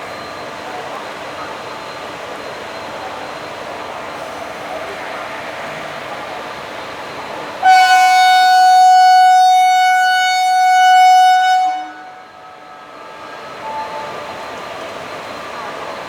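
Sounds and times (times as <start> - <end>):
locomotive horn blast: 7.6 - 13.2.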